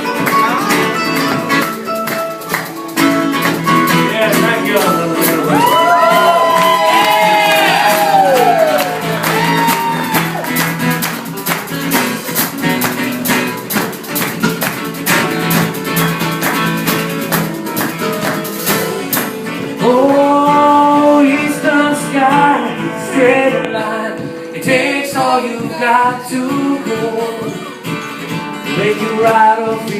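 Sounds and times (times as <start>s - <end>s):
strummed acoustic guitar: 0.0s - 29.9s
person singing: 4.0s - 10.2s, 19.6s - 27.9s, 28.6s - 29.9s.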